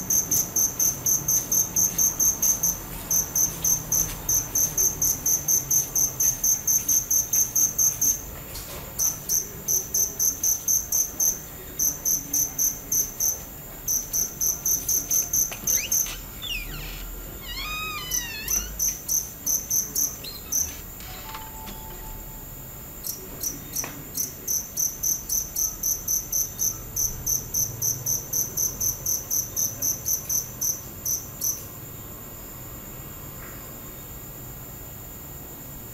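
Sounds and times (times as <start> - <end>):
crickets chirping: 0.0 - 35.9.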